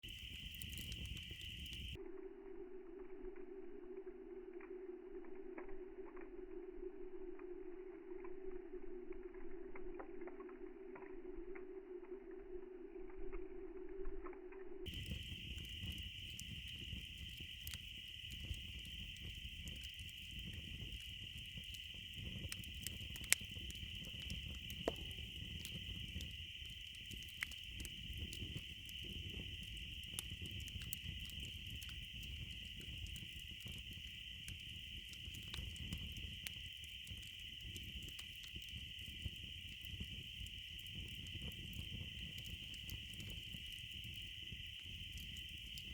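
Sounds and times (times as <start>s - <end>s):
campfire crackling and popping: 0.0s - 2.0s, 14.8s - 45.9s
insect chorus: 0.0s - 5.6s, 14.9s - 45.9s.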